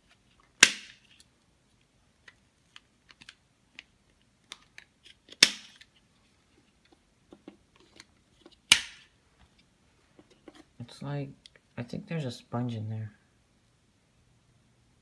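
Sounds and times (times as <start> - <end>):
loud sharp plastic snap: 0.6 - 1.0, 4.5 - 5.9, 8.7 - 9.1.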